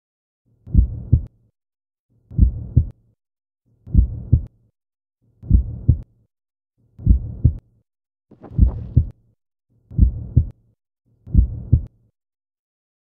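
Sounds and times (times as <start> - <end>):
heartbeat double thumps: 0.7 - 1.3, 2.4 - 2.9, 3.9 - 4.5, 5.5 - 6.0, 8.3 - 9.2, 10.0 - 10.5, 11.3 - 11.9.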